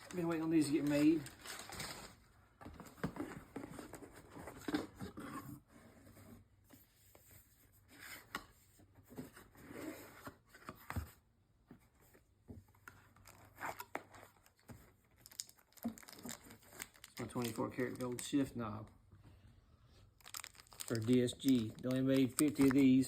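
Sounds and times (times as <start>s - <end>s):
packaging tearing and crinkling: 15.2s - 18.3s, 20.2s - 23.0s.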